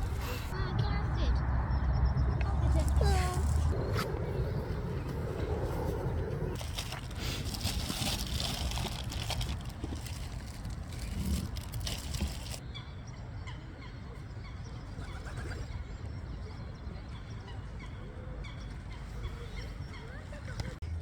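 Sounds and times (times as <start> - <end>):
low background rumble: 0.0 - 14.8.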